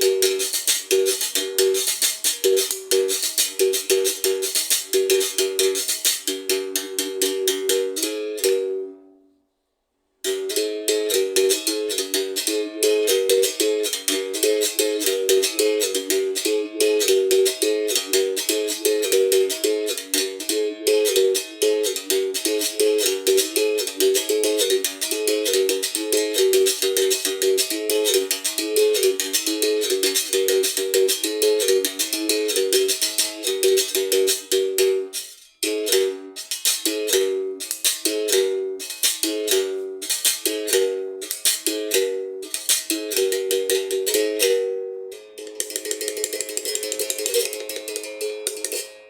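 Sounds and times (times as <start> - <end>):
plucked string instrument music: 0.0 - 9.4, 10.2 - 49.0
berimbau struck with stick: 45.4 - 49.0.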